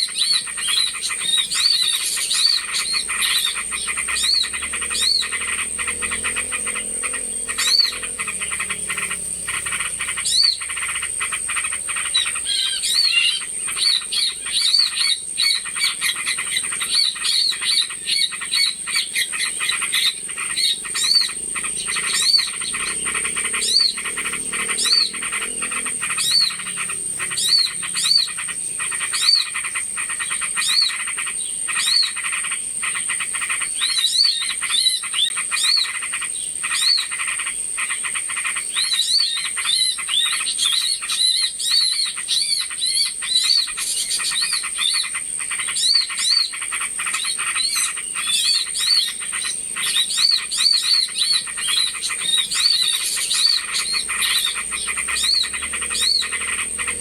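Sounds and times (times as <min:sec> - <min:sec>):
small birds calling: 0:00.0 - 0:57.0
rapid chattering clicks: 0:00.1 - 0:41.1, 0:42.1 - 0:57.0
high-pitched whine: 0:02.2 - 0:12.6.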